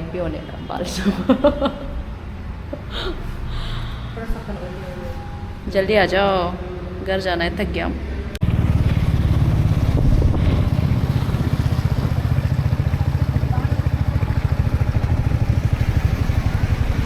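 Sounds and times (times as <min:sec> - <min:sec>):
vehicle engine running: 0:08.4 - 0:17.0.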